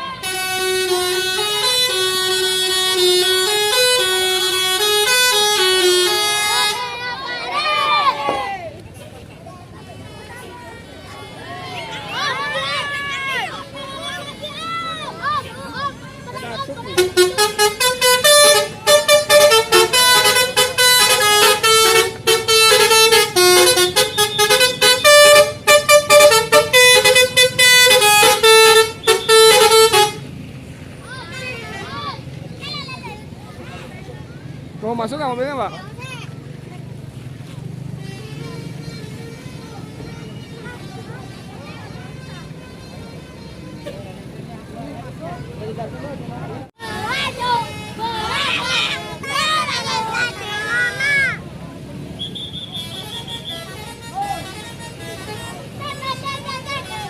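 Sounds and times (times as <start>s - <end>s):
bus multi-tone horn melody: 0.0s - 7.5s, 13.5s - 30.5s, 37.8s - 44.5s, 46.7s - 51.3s, 52.2s - 57.0s
musical air horn melody: 0.1s - 6.9s, 17.0s - 30.3s.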